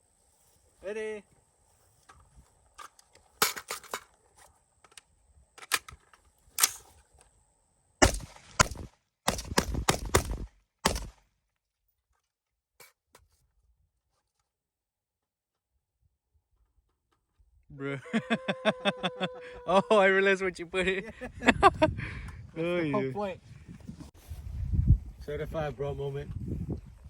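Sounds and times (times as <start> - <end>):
gunshots: 8.0 - 11.2.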